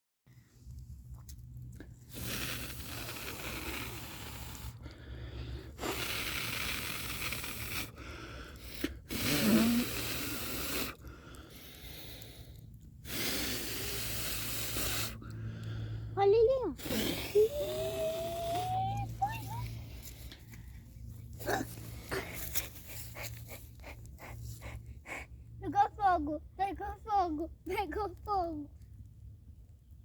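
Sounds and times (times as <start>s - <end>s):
person blowing on kindling: 2.0s - 15.7s, 16.4s - 24.6s.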